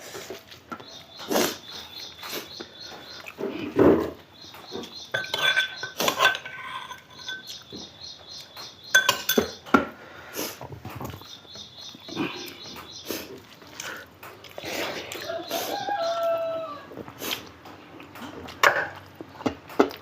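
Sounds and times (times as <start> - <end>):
dishes and utensils clinking: 4.7 - 7.9, 8.9 - 9.9
chewing and lip-smacking: 11.9 - 15.3.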